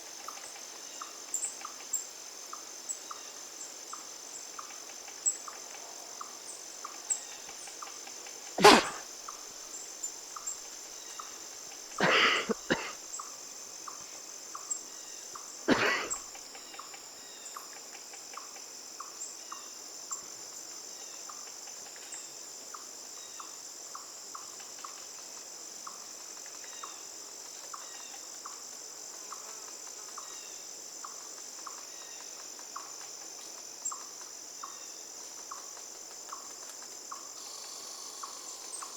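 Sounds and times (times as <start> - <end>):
crickets chirping: 5.2 - 17.8, 32.9 - 38.9
person sneezing: 8.6 - 9.0, 12.0 - 13.0, 15.7 - 16.2.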